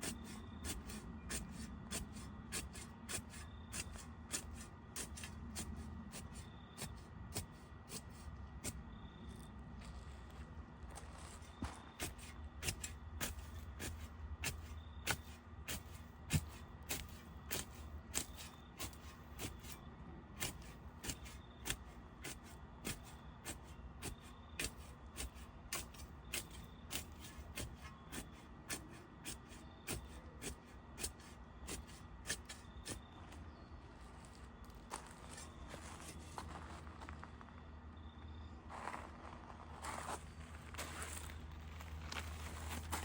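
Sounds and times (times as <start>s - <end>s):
carrot ferns chopped by hand: 12.0s - 33.0s.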